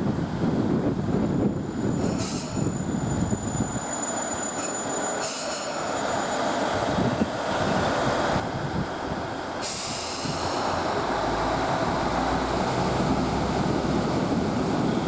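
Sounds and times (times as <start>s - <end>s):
railcar rumbling past: 0.0s - 15.0s
thin wheel squeal: 2.0s - 6.5s.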